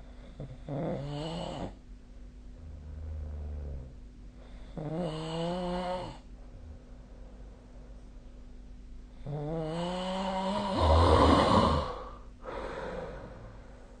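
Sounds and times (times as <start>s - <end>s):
person snoring: 9.2s - 13.6s.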